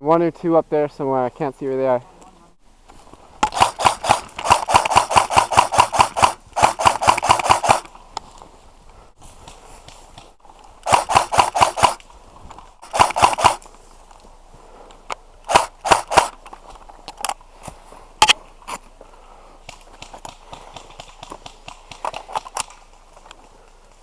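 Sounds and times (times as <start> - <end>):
airsoft rifle firing: 3.4 - 7.9, 10.8 - 12.0, 12.8 - 13.6, 15.5 - 16.4
sharp clicks: 3.4 - 7.9, 9.4 - 12.1, 12.8 - 13.7, 15.5 - 16.5.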